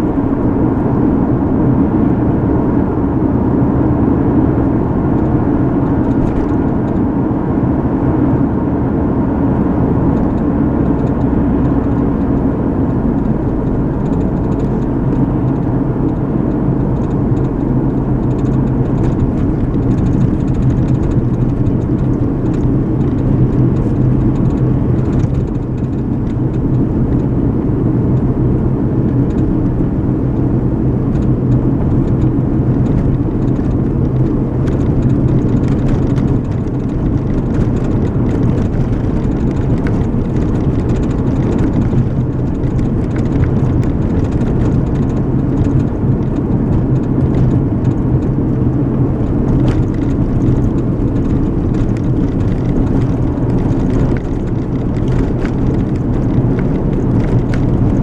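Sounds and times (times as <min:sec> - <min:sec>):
car road and engine noise: 0:00.0 - 0:58.0.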